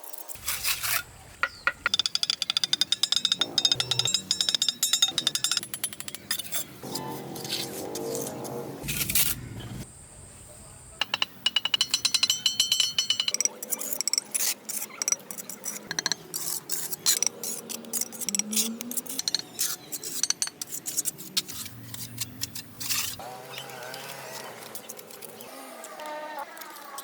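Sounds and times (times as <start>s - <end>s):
small hard objects clicking: 1.4s - 6.7s
ringing glassy tone: 1.9s - 5.7s, 11.0s - 13.5s.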